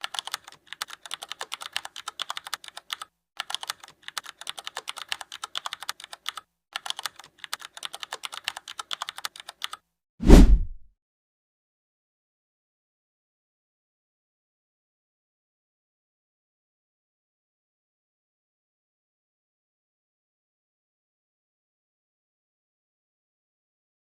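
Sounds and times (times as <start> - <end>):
loud thump: 10.2 - 10.8.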